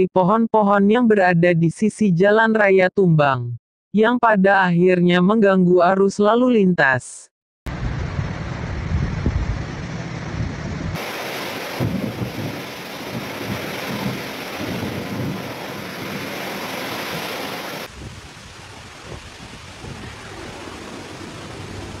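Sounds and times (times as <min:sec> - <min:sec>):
low wind gusts: 0:07.7 - 0:22.0
heavy rain pouring: 0:11.0 - 0:22.0
deep thunder rumble: 0:11.8 - 0:17.2, 0:17.8 - 0:22.0.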